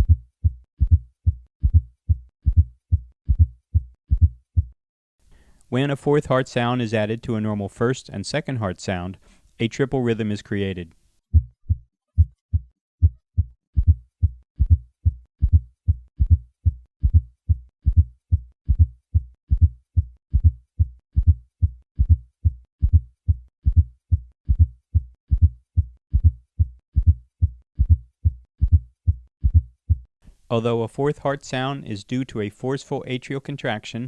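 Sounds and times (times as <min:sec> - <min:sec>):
heartbeat in triple rhythm: 0:00.0 - 0:04.8, 0:11.3 - 0:30.1.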